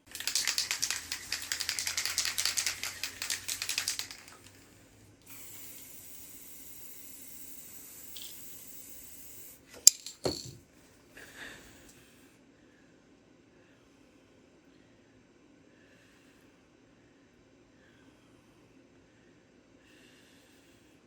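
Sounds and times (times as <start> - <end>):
rapid rattling: 0.0 - 4.8, 9.8 - 10.6
faint steady hiss: 2.6 - 10.5.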